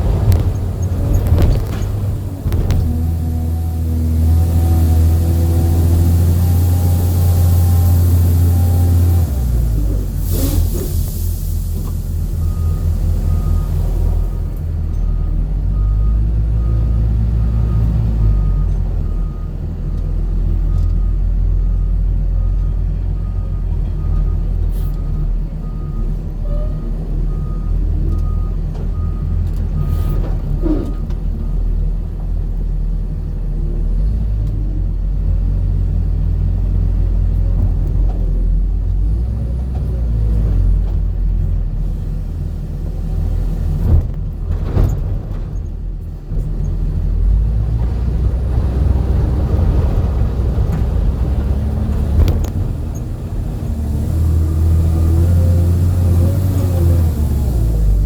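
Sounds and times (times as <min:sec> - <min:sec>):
vehicle engine low rumble: 0:00.0 - 0:58.0.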